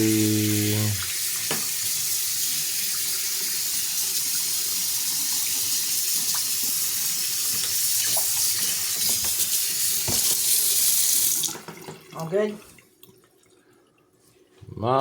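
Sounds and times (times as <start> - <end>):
tap water splashing into sink: 0.5 - 3.4, 5.2 - 13.3.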